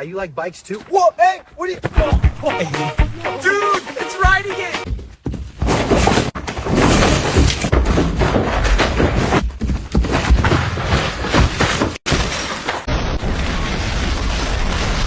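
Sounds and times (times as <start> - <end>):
heavy thuds: 1.8 - 2.5
loud crashing and clattering: 5.6 - 15.0.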